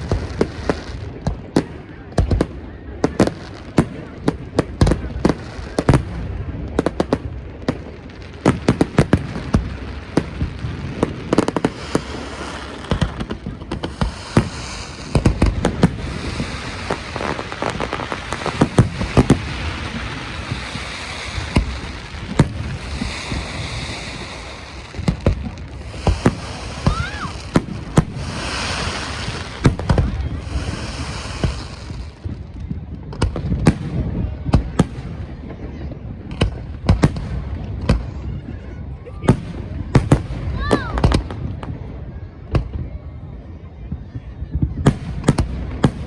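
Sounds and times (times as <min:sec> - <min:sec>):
firework bangs: 0:00.0 - 0:43.2, 0:44.0 - 0:46.0
crackling hiss: 0:08.0 - 0:32.4
rising firework whistle: 0:25.8 - 0:31.9.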